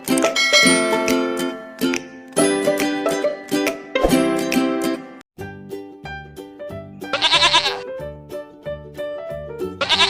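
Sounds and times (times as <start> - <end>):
children's music with plucked notes: 0.0 - 10.0
goat bleating: 7.1 - 7.8, 9.8 - 10.0.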